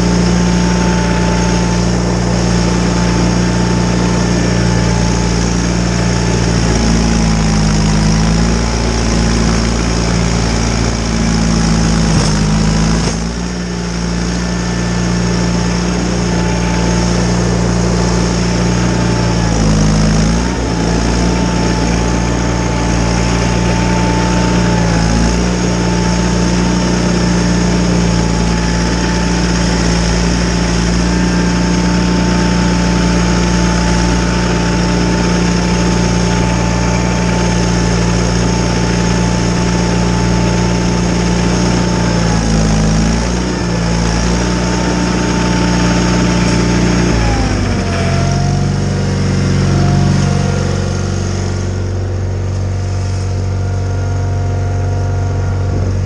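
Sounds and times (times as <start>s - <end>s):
steady whine: 0.0s - 56.0s
tractor engine running: 0.0s - 56.0s.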